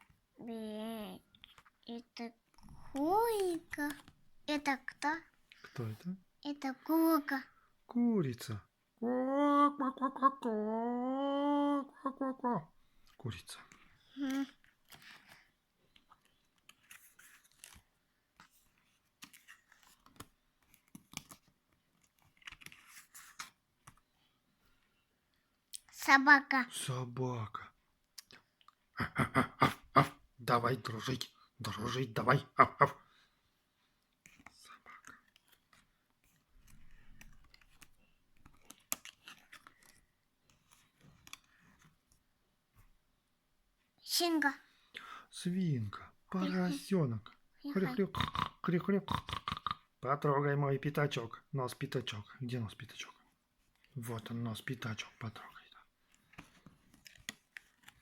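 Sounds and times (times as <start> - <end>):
board book pages turning: 1.2 - 6.0, 12.9 - 24.9, 34.2 - 43.0, 53.6 - 58.0.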